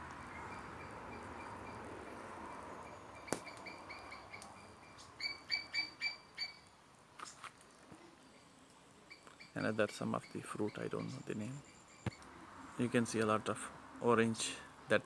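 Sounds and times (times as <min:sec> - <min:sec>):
background hiss: 0:00.0 - 0:15.0
bird chirping: 0:00.2 - 0:06.7, 0:08.3 - 0:12.3.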